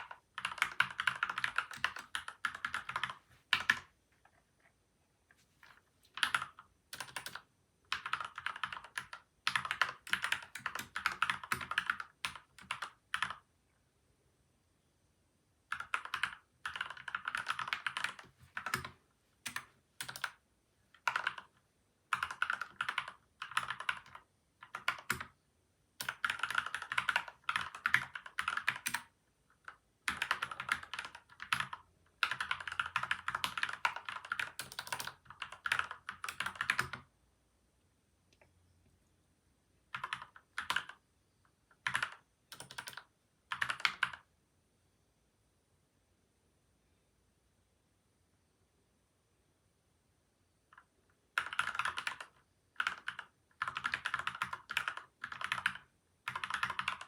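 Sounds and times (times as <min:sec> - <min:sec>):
mechanical keyboard typing: 0:00.0 - 0:03.9, 0:06.1 - 0:13.4, 0:15.7 - 0:20.4, 0:21.0 - 0:25.4, 0:26.0 - 0:37.1, 0:39.9 - 0:41.0, 0:41.7 - 0:44.3, 0:50.7 - 0:57.0.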